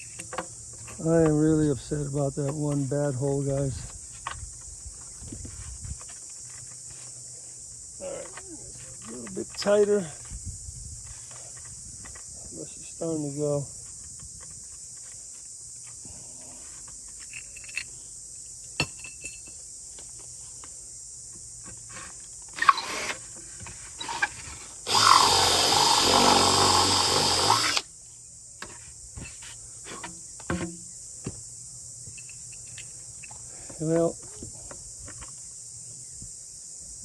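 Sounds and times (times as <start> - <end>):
crickets chirring: 0.0 - 37.0
power drill running: 24.0 - 27.9.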